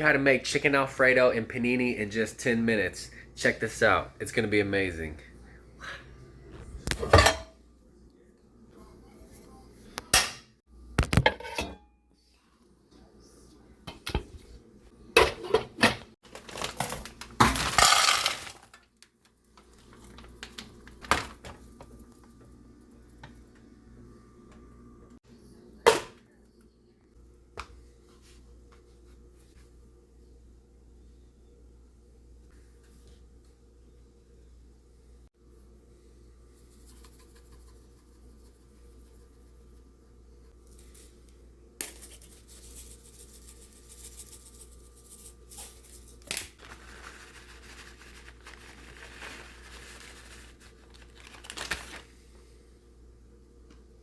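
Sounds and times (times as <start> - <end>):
cookware knocking and clinking: 7.0 - 7.5, 11.1 - 11.8.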